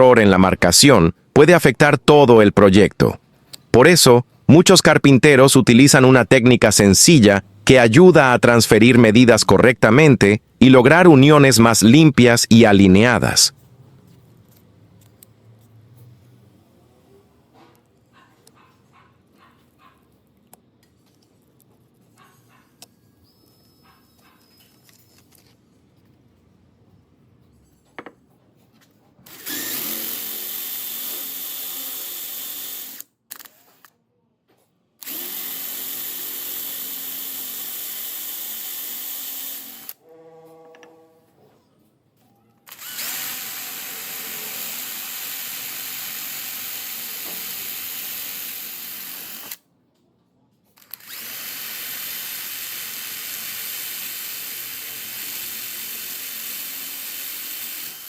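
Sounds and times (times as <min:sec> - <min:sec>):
electric power tool running: 0:29.3 - 0:33.0, 0:35.0 - 0:40.0, 0:42.7 - 0:49.6, 0:50.9 - 0:58.0.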